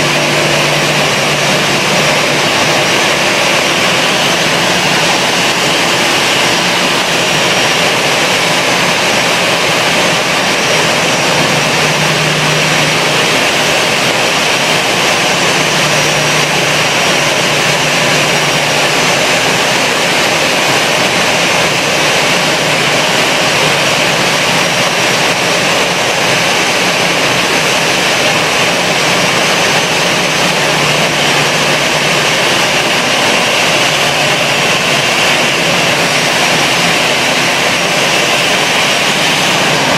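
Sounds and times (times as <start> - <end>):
jet engines running: 0.0 - 39.9.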